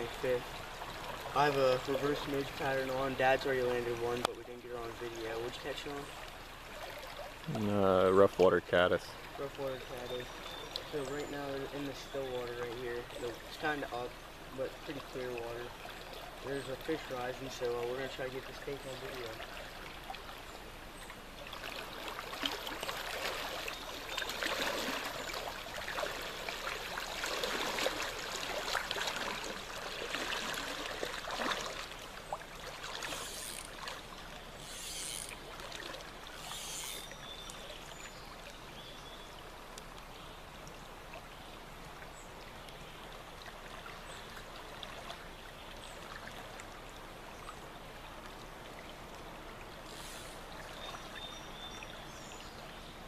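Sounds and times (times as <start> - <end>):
creek water running: 0.0 - 53.0
short high hisses: 49.9 - 50.4.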